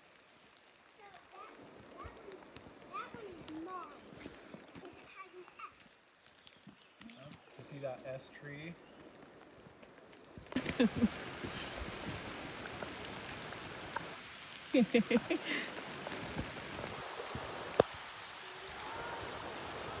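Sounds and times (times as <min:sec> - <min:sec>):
steady rain falling: 0:00.0 - 0:20.0.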